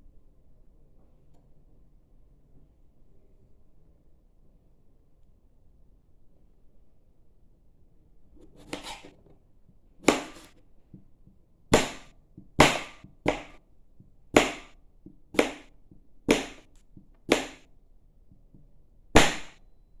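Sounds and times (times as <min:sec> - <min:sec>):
knife blade strokes: 0:08.4 - 0:09.2, 0:10.1 - 0:10.5.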